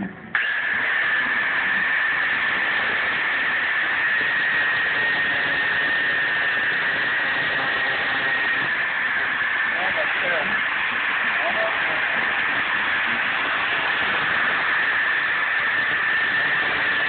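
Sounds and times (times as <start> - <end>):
grinder cutting metal: 0.0 - 17.0.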